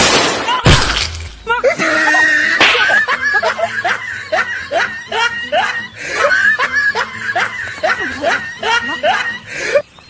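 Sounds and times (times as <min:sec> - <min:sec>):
person chuckling: 0:01.7 - 0:09.8.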